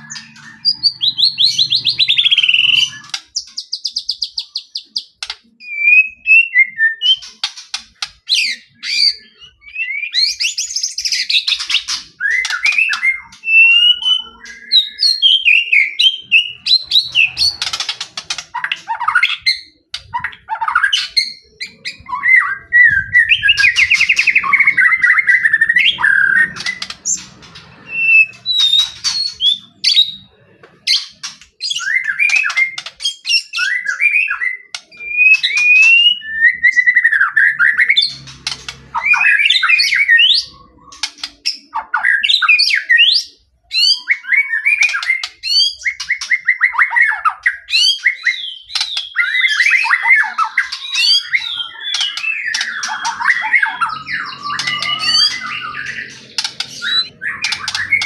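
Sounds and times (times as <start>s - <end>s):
bird song with whistles and trills: 0.0s - 58.0s.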